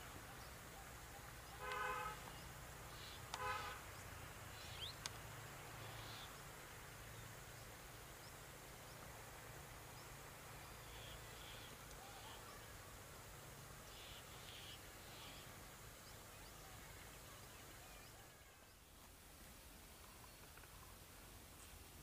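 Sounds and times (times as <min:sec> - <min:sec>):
faint bird chirps: 0:00.0 - 0:05.1, 0:05.8 - 0:06.5, 0:09.9 - 0:12.9, 0:13.8 - 0:19.0
short harsh honks: 0:01.6 - 0:02.3, 0:03.4 - 0:03.8.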